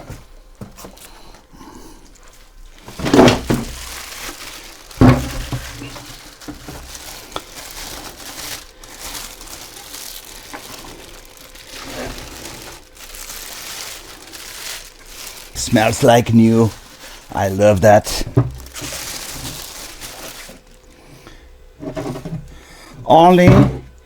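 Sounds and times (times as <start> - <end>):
plastic wrap crinkling: 2.7 - 21.1.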